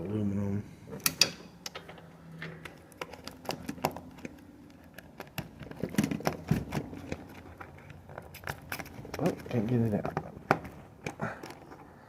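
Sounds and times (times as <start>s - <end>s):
clicks and knocks of wire plugs: 1.0s - 11.8s.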